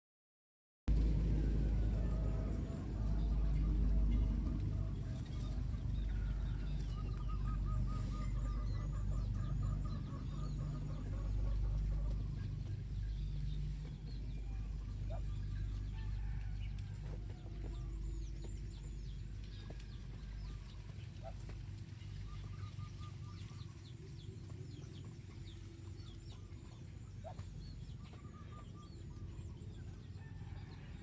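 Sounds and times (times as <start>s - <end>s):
low rumble: 0.9s - 31.0s
small birds chirping: 2.6s - 30.6s
ducks quacking: 6.8s - 12.8s.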